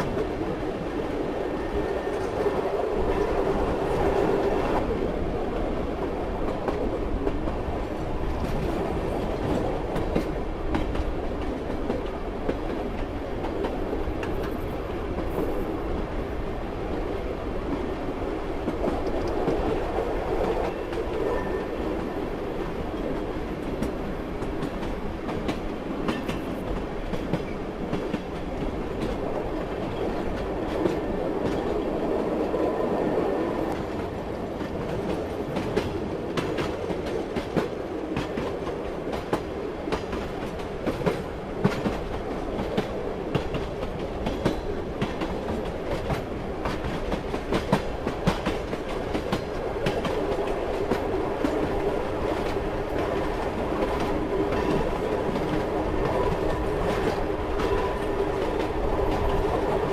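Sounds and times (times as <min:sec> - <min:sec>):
train rumbling along track: 0:00.0 - 0:59.9
wheels clacking on rail joints: 0:33.7 - 0:59.9.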